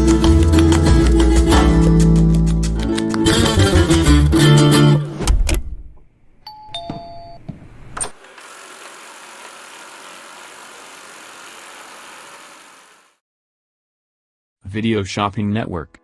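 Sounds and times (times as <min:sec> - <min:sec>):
vacuum motor whirring hiss: 0:08.1 - 0:13.2.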